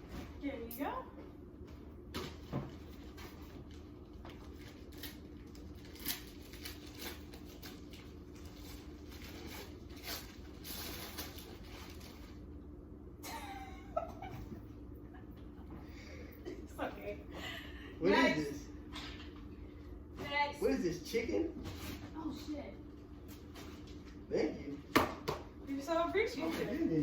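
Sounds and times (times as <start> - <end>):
gift wrapping rustling: 2.8 - 12.4.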